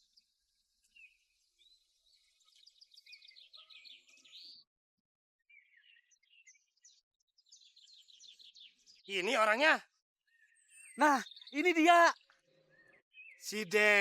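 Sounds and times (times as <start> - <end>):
faint birds chirping: 5.5 - 14.0.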